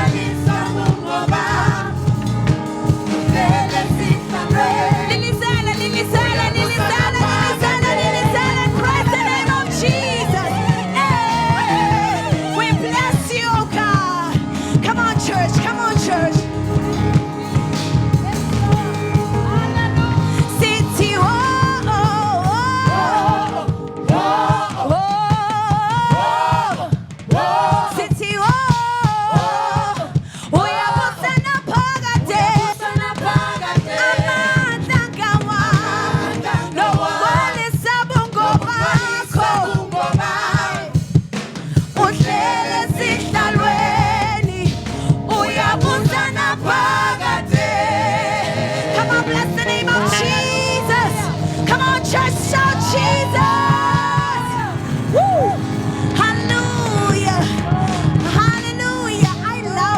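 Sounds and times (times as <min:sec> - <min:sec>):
band with steady drum beat: 0:00.0 - 0:59.9
voices singing with vibrato: 0:00.0 - 0:59.9.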